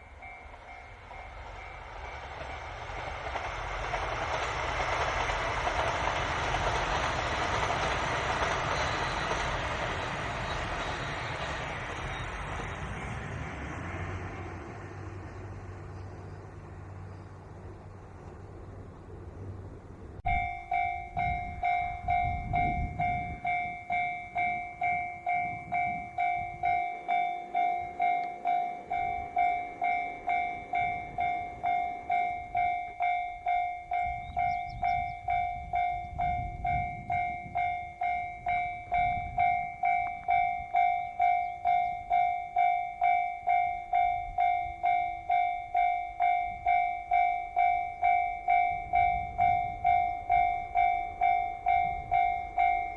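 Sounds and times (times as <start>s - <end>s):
level crossing alarm dinging: 20.3s - 52.9s.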